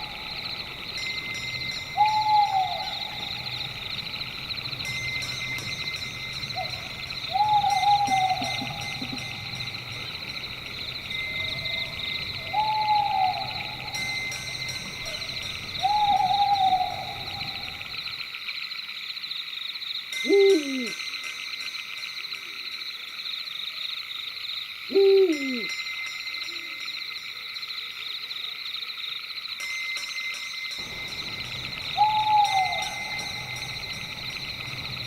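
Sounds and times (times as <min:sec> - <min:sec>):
night insects chorus: 0:00.0 - 0:35.0
owl hooting: 0:01.8 - 0:04.1, 0:06.6 - 0:10.1, 0:10.8 - 0:14.2, 0:15.0 - 0:18.0, 0:20.3 - 0:21.0, 0:24.9 - 0:25.7, 0:31.2 - 0:35.0.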